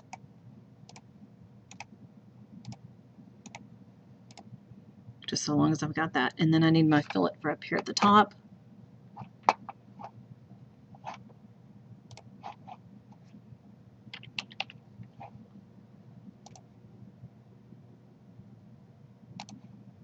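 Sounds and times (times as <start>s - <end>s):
computer mouse clicking: 0.0s - 0.2s, 0.9s - 1.1s, 1.7s - 1.9s, 2.6s - 2.8s, 3.4s - 3.6s, 4.3s - 4.5s, 12.1s - 13.3s, 14.1s - 15.3s, 16.4s - 16.7s, 19.4s - 19.7s.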